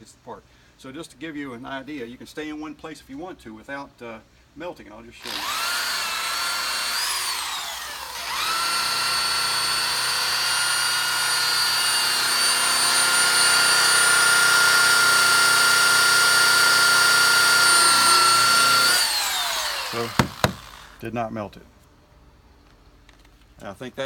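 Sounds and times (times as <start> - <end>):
electric buffer motor whine: 5.2 - 21.0.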